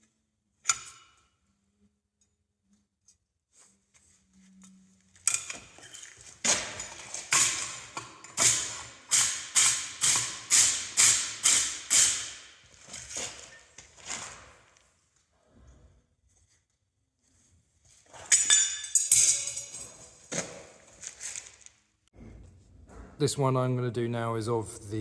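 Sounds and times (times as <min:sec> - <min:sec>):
hammer striking hot steel: 0:06.5 - 0:12.6.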